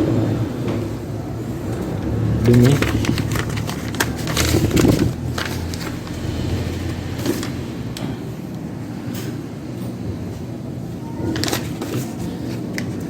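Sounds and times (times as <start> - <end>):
steady low rumble: 0.0 - 9.0
plastic clicks and scrapes: 2.5 - 6.2.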